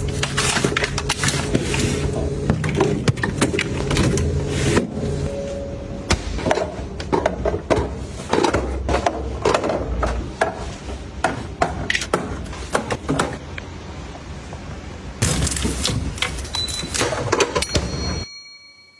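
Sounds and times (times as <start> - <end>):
plastic containers clicking and knocking: 6.4 - 13.5.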